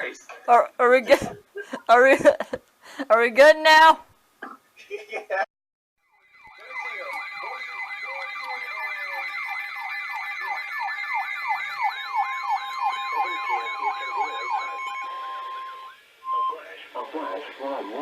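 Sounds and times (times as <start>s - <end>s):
steady high electronic tones: 6.1s - 18.0s
steady warning alarm tone: 6.1s - 18.0s
falling siren sweep: 6.3s - 18.0s.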